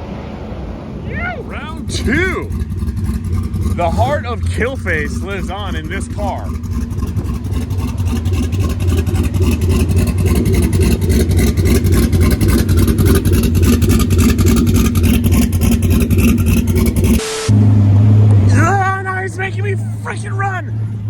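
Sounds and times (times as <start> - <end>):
car engine idling: 0.7 - 21.0.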